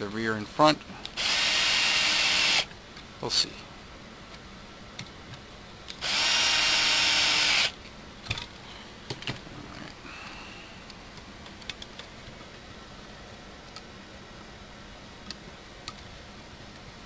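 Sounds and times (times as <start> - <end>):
cordless power driver whining: 1.0 - 2.7, 5.9 - 7.8.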